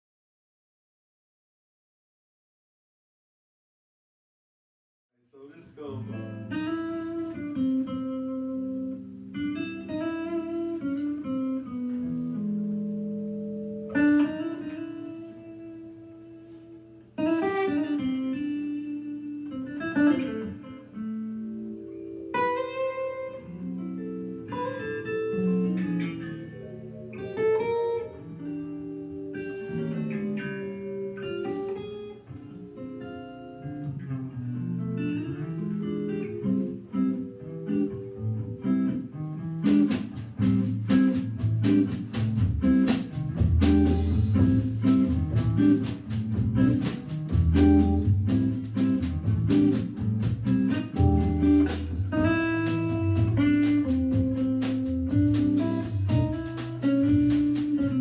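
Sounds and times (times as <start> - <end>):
electric guitar playing jazz: 6.0 - 58.0
drum hits: 39.7 - 58.0
organ tones: 43.4 - 58.0.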